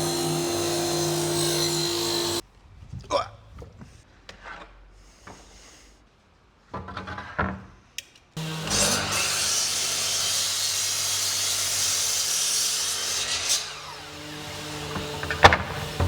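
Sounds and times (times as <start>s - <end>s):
electric power tool running: 0.0s - 2.4s, 8.4s - 11.1s, 13.3s - 16.0s.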